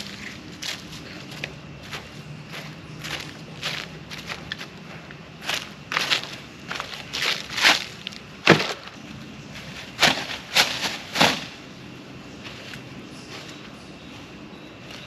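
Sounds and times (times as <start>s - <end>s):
firewood knocks: 8.5s - 8.9s.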